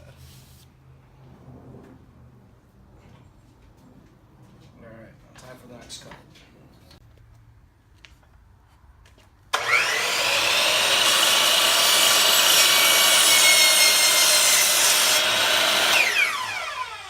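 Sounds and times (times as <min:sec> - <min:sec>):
power saw cutting wood: 0:09.5 - 0:17.0.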